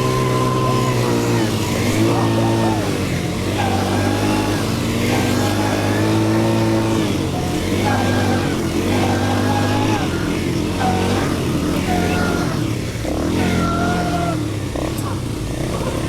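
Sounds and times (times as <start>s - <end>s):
atv engine revving: 0.0s - 16.0s.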